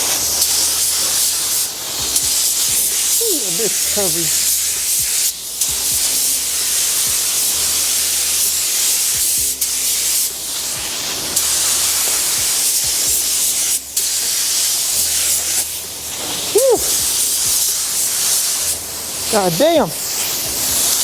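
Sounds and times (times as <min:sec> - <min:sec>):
paint spray gun hissing: 0:02.3 - 0:21.0.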